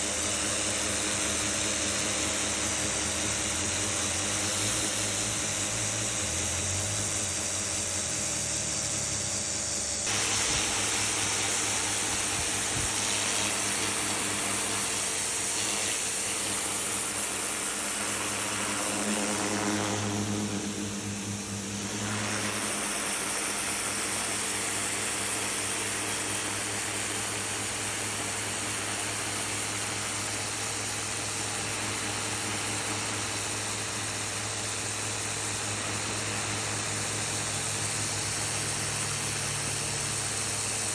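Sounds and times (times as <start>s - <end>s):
pressure washer motor humming: 0.0s - 40.9s.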